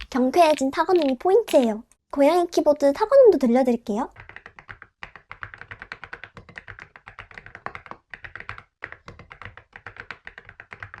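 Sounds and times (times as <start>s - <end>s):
mechanical keyboard typing: 4.1s - 11.0s.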